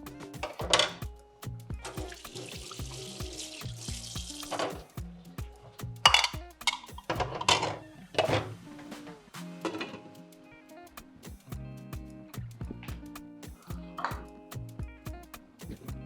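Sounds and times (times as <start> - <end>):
soft background music: 0.0 - 16.0.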